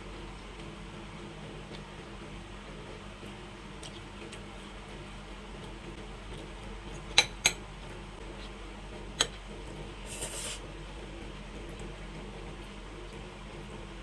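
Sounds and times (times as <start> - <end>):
cutlery clinking against plate: 10.1 - 10.6
cutlery scraping plate: 10.1 - 10.6.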